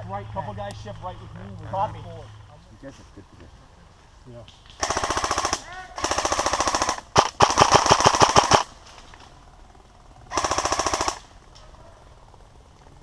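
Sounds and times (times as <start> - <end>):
airsoft rifle firing bursts: 4.8 - 8.8, 10.3 - 11.3.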